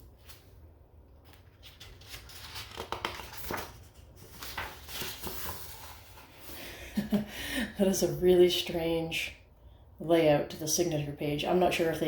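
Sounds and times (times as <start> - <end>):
book pages turning: 0.0 - 6.6.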